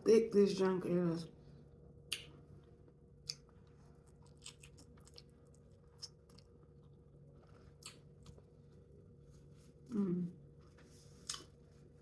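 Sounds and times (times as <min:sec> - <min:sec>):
low steady hum: 0:00.0 - 0:12.0
close chewing: 0:03.2 - 0:06.6.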